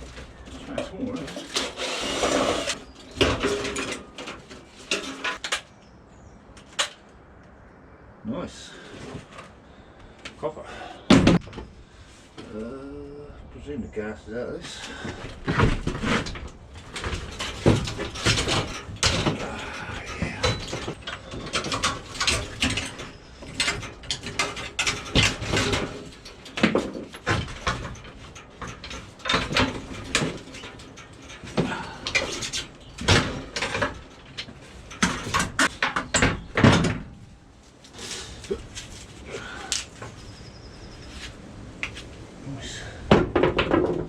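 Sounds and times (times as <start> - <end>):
scrap metal knocking and scraping: 0.0 - 5.7, 14.8 - 37.3.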